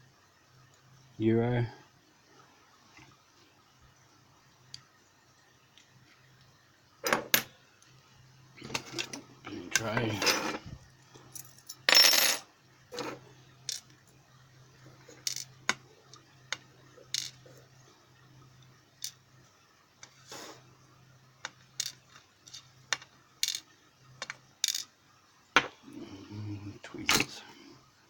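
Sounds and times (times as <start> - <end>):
faint low hum: 0.0 - 28.0
metal parts clicking on tray: 23.4 - 24.9.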